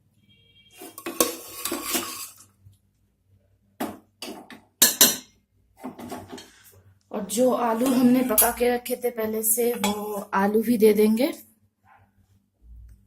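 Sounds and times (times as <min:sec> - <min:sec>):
metal spoon scraping a pot: 0:00.7 - 0:02.5, 0:05.9 - 0:06.7, 0:07.6 - 0:08.7.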